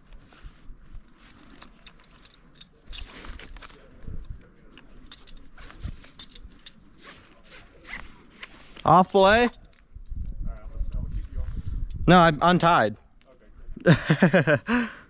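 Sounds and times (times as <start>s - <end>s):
metal climbing gear clinking: 0.0s - 10.9s, 11.6s - 12.1s.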